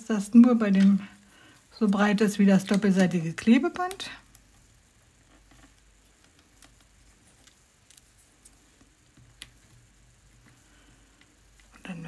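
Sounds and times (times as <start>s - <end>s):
paper and tape ticks: 2.6s - 10.5s.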